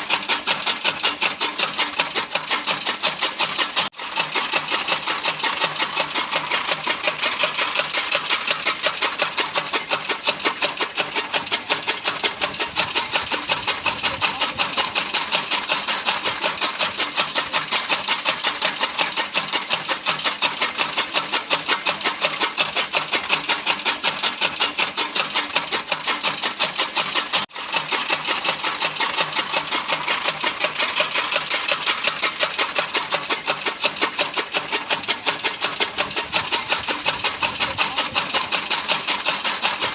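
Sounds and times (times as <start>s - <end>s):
chaff cutter blades chopping: 0.0s - 39.9s.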